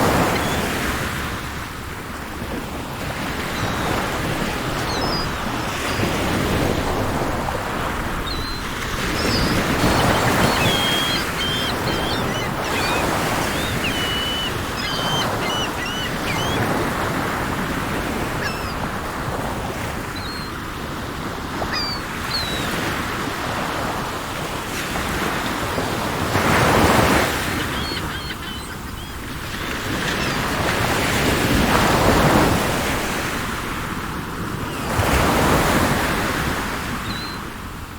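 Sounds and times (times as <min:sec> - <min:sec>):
sea surf washing in: 0:00.0 - 0:37.0
small birds chirping: 0:03.6 - 0:06.4, 0:08.2 - 0:18.9, 0:20.1 - 0:20.6, 0:21.6 - 0:22.8, 0:26.8 - 0:30.8.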